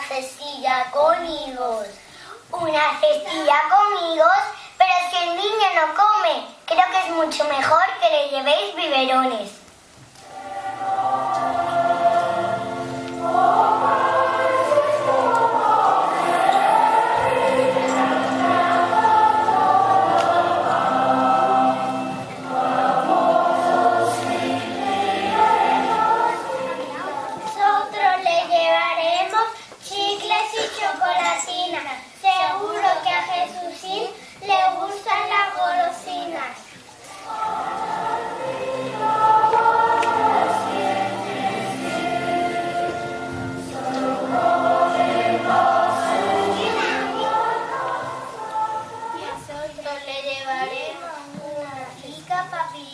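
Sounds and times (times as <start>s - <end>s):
instrumental accompaniment: 10.2s - 27.6s, 37.3s - 49.2s
children singing in chorus: 10.2s - 28.9s, 37.0s - 49.9s.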